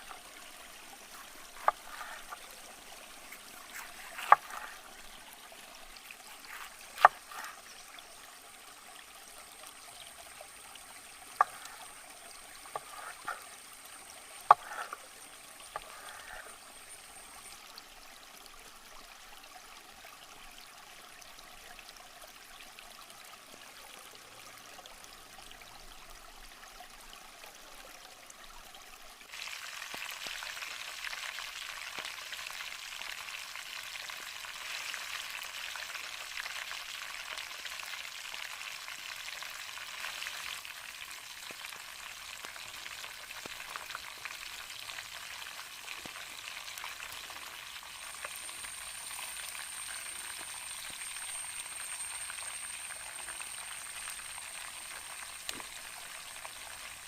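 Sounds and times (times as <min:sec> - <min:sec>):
chicken frying in hot oil: 0:00.0 - 0:17.6, 0:29.2 - 0:57.0
soft hiss: 0:00.0 - 0:21.6
thin high steady whine: 0:47.8 - 0:57.0.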